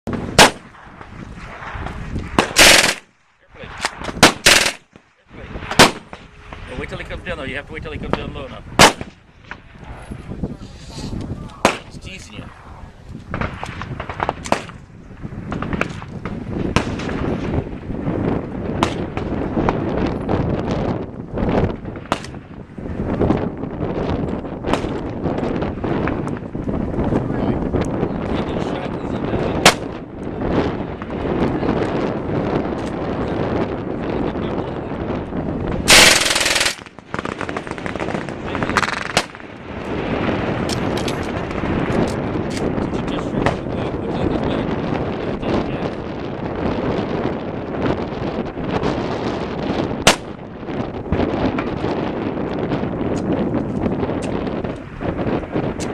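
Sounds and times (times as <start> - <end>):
wind on microphone: 0.0 - 55.9
gunshots: 0.1 - 5.0, 5.6 - 6.8, 8.8 - 9.7, 11.6 - 12.1, 13.3 - 14.9, 15.5 - 17.6, 18.7 - 19.4, 21.8 - 22.5, 24.7 - 25.0, 29.4 - 30.0, 35.9 - 39.5, 50.0 - 50.4
machine-gun fire: 0.4 - 0.9, 1.5 - 3.1, 3.9 - 4.9, 5.6 - 6.2, 8.8 - 9.2, 29.6 - 29.9, 35.9 - 39.4, 50.1 - 50.3.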